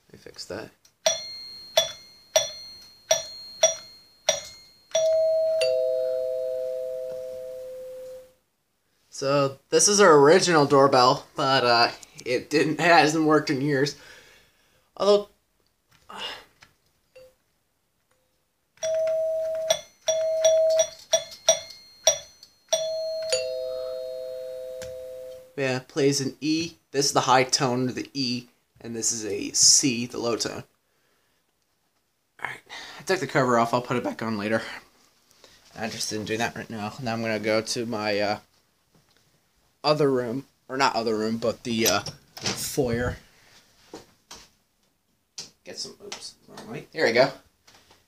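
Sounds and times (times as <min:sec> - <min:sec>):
ding-dong doorbell chime: 0:01.0 - 0:08.3, 0:18.8 - 0:25.6
metallic doorbell bar strikes: 0:01.1 - 0:05.8, 0:19.7 - 0:23.5.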